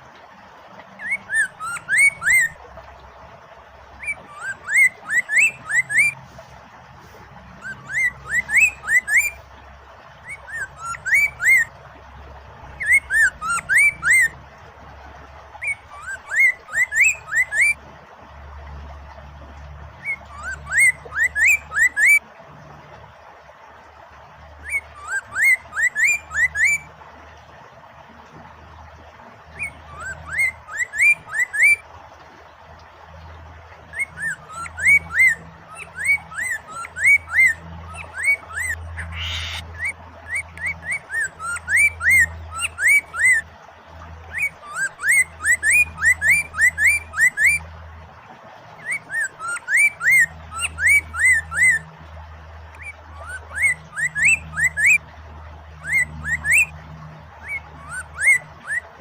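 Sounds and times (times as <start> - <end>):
flowing water hiss: 0.0 - 59.0
bird singing whistled notes: 1.0 - 2.6, 4.0 - 6.2, 7.6 - 9.4, 10.2 - 11.7, 12.7 - 14.4, 15.6 - 17.8, 20.0 - 22.2, 24.6 - 26.9, 29.6 - 31.8, 33.9 - 43.5, 44.3 - 47.6, 48.8 - 51.9, 52.8 - 55.0, 55.8 - 56.8, 57.4 - 58.9.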